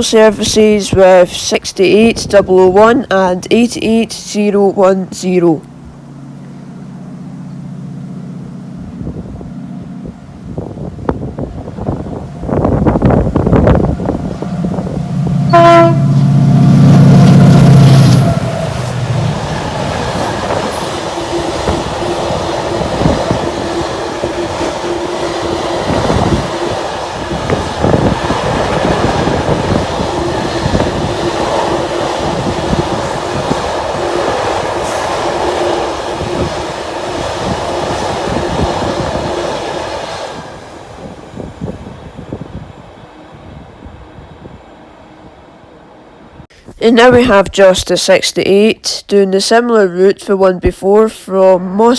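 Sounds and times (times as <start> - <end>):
train horn: 13.8 - 19.1.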